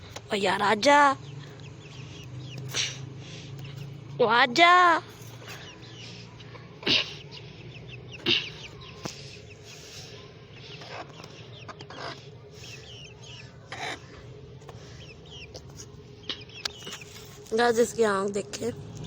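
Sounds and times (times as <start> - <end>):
steady low hum: 0.0 - 19.0
faint high chirping: 5.0 - 18.8.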